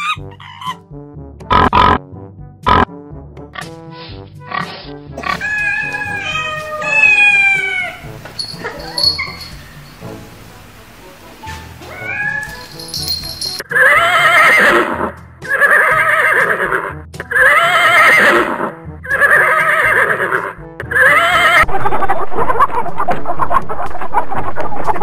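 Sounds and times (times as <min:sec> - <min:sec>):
horse neighing: 0:05.2 - 0:10.0, 0:13.6 - 0:21.7.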